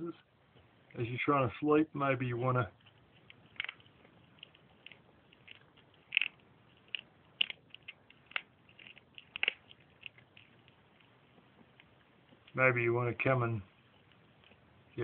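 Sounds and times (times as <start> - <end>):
cat crunching bones: 2.7 - 12.6, 13.8 - 15.0.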